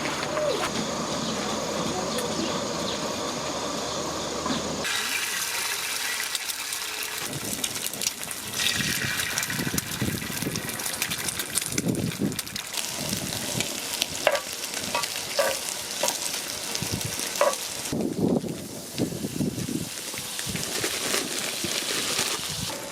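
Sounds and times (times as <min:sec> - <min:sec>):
food sizzling in a pan: 0:04.8 - 0:22.7.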